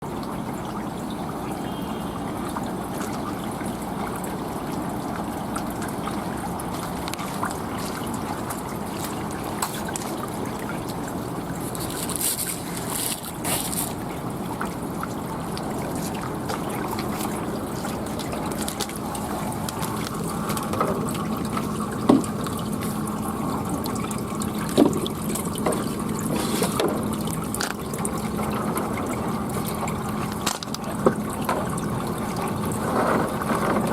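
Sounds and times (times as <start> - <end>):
water trickling: 0.0 - 33.9.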